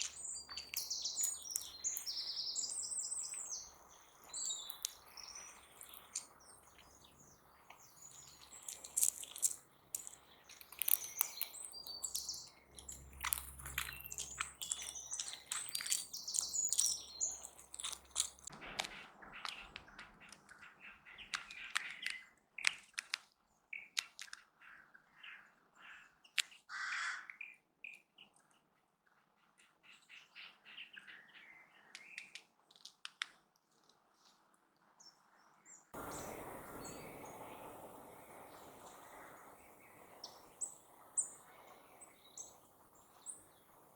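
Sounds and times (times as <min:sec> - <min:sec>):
birds chirping: 0:00.0 - 0:22.3, 0:36.0 - 0:43.9
lower bird call: 0:36.0 - 0:43.6.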